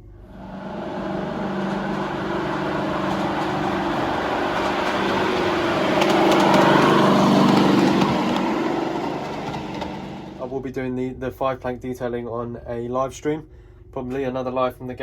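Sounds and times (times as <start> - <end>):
small engine running: 0.3 - 10.5.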